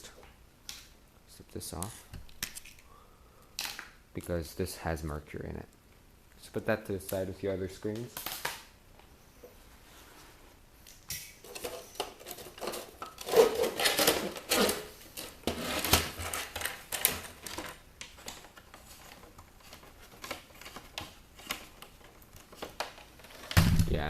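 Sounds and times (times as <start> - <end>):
plastic and metal parts rattling: 11.4 - 23.7.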